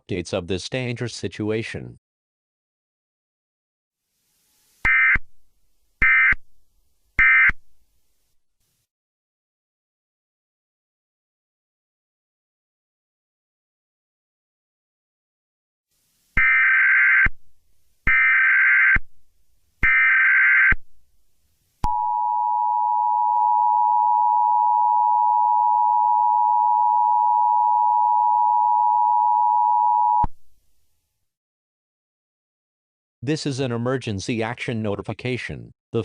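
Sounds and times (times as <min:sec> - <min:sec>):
harsh dual tone alert signal: 0:04.8 - 0:05.3.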